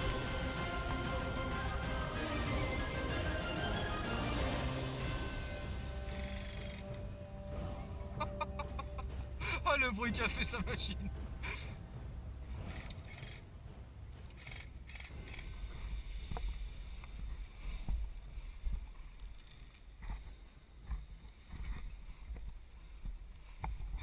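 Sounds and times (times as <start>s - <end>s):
low wind rumble: 0.0s - 24.0s
rustles: 5.0s - 24.0s.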